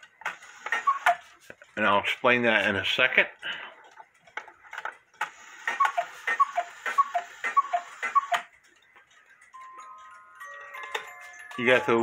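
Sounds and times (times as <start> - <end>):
cuckoo clock calls: 0.6 - 1.3, 5.4 - 8.6
clock mechanism click: 5.6 - 9.8
clock ticking: 5.6 - 12.0.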